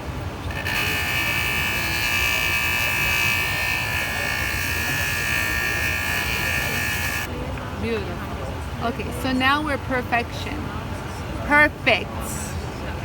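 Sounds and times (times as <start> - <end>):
bench polisher motor whine: 0.0 - 7.3.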